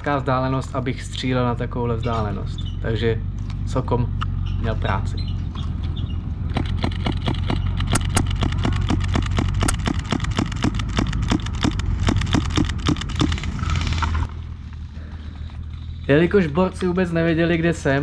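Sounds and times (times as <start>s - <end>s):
vehicle engine running: 0.0s - 18.0s
rapid airsoft gun shots: 6.5s - 13.6s.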